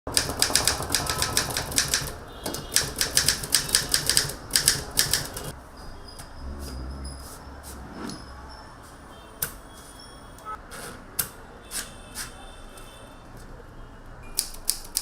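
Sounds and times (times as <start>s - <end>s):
manual typewriter typing: 0.1s - 5.6s, 14.3s - 15.0s.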